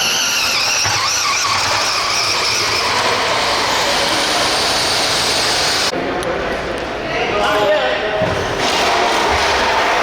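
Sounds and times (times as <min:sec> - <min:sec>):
electric motor whining: 0:00.0 - 0:05.9.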